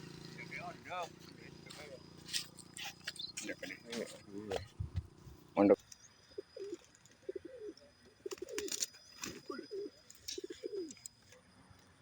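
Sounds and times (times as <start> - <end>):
dove cooing: 6.3 - 11.0.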